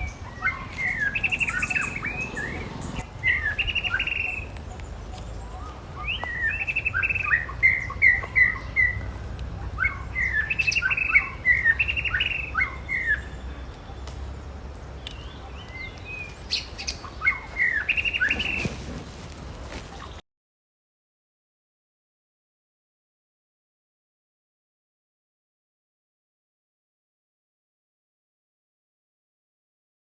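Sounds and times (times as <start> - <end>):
high chirping animal calls: 0.0 - 4.9.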